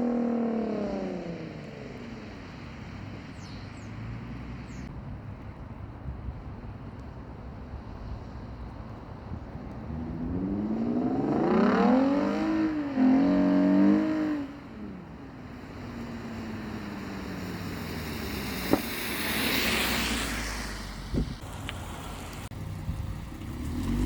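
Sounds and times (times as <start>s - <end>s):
car engine revving: 9.8s - 24.0s.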